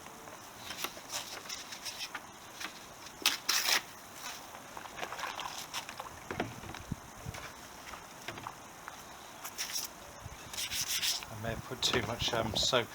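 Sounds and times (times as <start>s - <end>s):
wet sandpaper scrubbing metal: 10.5s - 11.3s.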